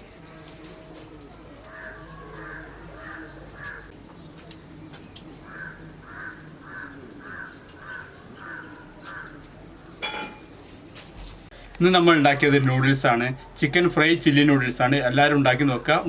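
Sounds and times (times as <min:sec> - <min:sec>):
crow cawing: 0:01.7 - 0:03.9, 0:05.5 - 0:09.4.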